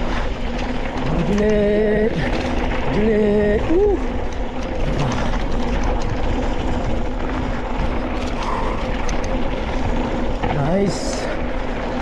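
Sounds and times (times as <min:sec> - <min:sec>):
mountain bike tyres and rattling: 0:00.0 - 0:12.0
small clicks and knocks: 0:04.2 - 0:10.8.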